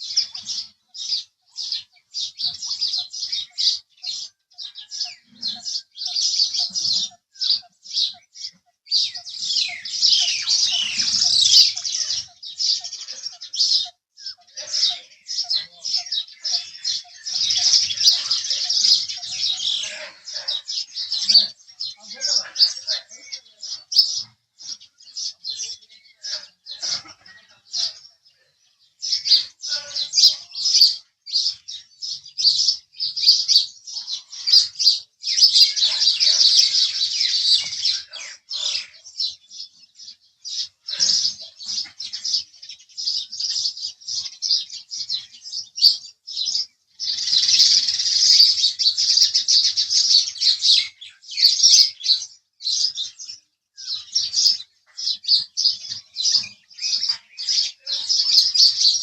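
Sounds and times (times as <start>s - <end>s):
sparrows chirping: 0.0s - 59.0s.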